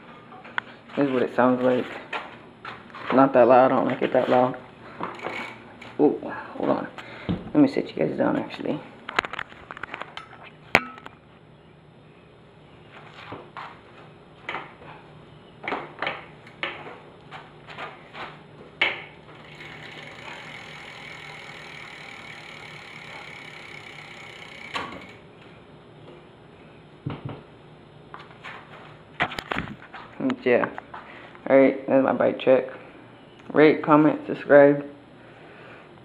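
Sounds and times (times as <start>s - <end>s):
bike hub whirring buzz: 4.2s - 6.6s, 18.8s - 26.2s
bike knocks and clatter: 18.8s - 25.2s.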